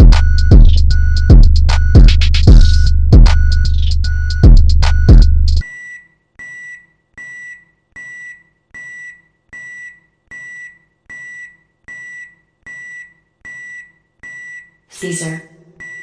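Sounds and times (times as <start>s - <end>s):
loud hip-hop beat: 0.0s - 5.6s
microwave oven beeping: 4.9s - 14.8s, 15.8s - 16.0s.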